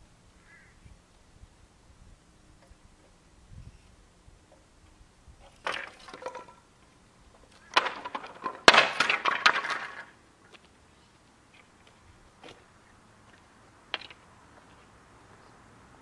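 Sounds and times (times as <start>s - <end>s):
sharp crack: 7.6s - 10.2s.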